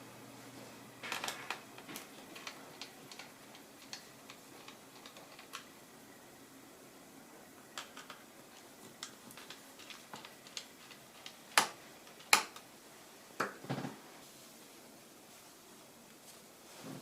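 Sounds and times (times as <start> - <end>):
laptop parts clicking: 1.0 - 5.7, 9.0 - 12.7.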